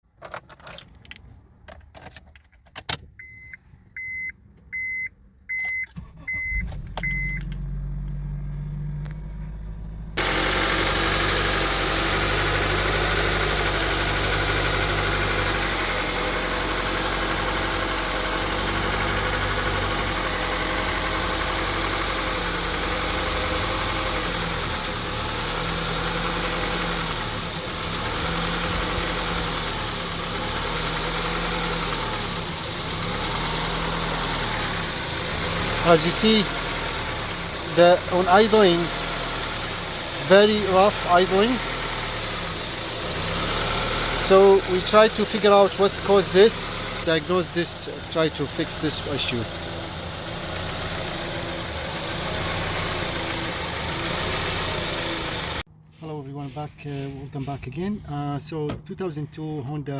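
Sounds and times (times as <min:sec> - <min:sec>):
short beeps: 0:03.2 - 0:07.5
car engine idling roughly: 0:09.3 - 0:55.7.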